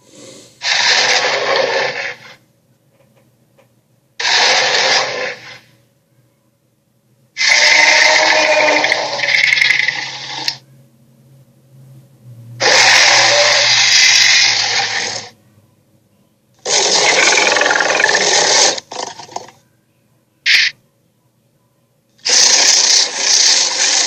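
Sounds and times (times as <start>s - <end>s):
harsh hissing creature calls: 0.0s - 2.4s, 4.2s - 5.7s, 7.4s - 10.6s, 12.6s - 15.3s, 16.6s - 19.2s, 20.5s - 20.8s, 22.2s - 24.0s.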